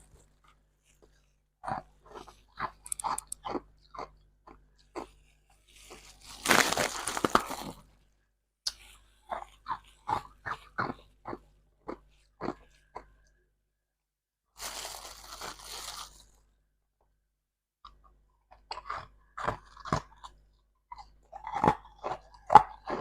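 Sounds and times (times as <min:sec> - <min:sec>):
ice being chewed: 0:00.5 - 0:07.8, 0:08.7 - 0:13.2, 0:18.5 - 0:23.0.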